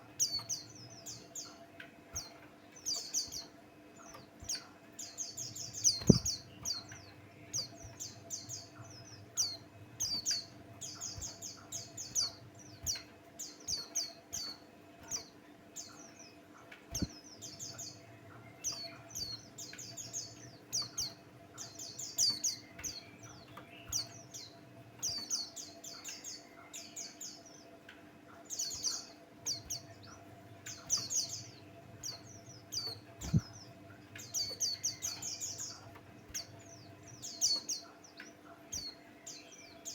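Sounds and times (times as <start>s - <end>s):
bird twittering song: 0.0s - 39.9s
faint steady hum: 0.0s - 39.9s
low thumps: 5.9s - 6.4s, 33.2s - 33.5s.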